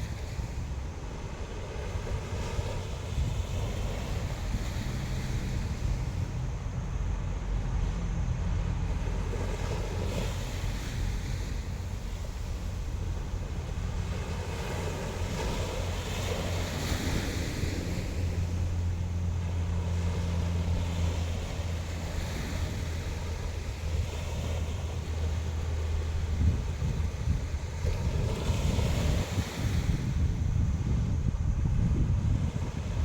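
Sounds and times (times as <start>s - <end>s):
sea waves breaking: 0.0s - 33.0s
wind buffeting microphone: 0.0s - 33.0s.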